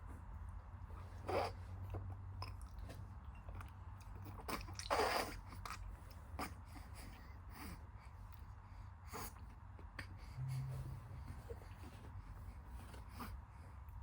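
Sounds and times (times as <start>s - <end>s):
steady low hum: 10.0s - 14.0s.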